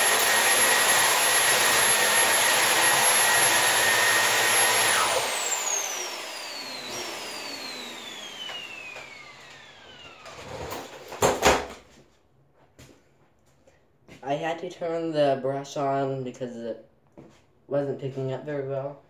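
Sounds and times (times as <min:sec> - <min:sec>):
vacuum cleaner motor winding down: 0:00.0 - 0:11.2.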